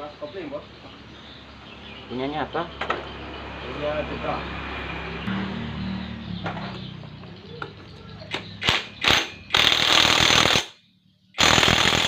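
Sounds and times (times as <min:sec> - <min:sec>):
loud tool rattling: 0:08.3 - 0:10.8, 0:11.4 - 0:12.0
sharp metallic clicks: 0:08.3 - 0:10.8.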